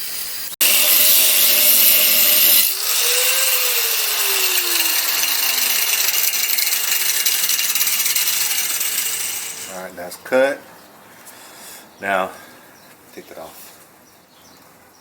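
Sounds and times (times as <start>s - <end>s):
angle grinder cutting metal: 0.0s - 9.8s.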